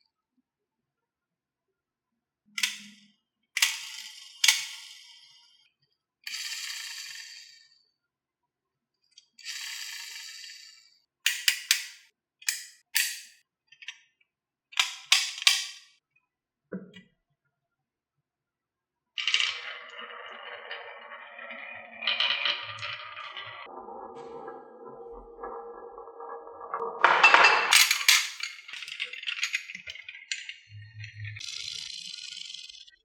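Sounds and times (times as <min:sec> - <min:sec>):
marbles clacking on track: 0:02.6 - 0:02.9, 0:03.6 - 0:05.0, 0:11.3 - 0:13.4, 0:19.2 - 0:23.7, 0:27.0 - 0:32.9
marbles rolling rattle: 0:19.2 - 0:23.7, 0:27.0 - 0:32.9.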